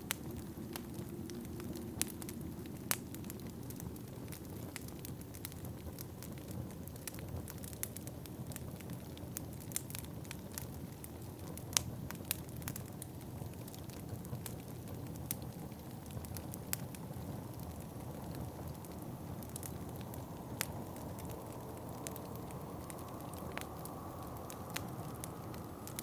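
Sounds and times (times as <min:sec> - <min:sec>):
wood fire crackling: 0:00.0 - 0:26.0
low steady rumble: 0:15.4 - 0:26.0.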